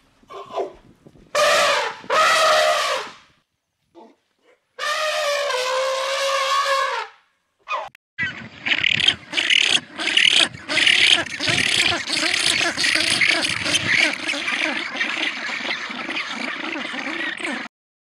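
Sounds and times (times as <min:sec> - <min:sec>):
animal calling: 0:07.6 - 0:17.7.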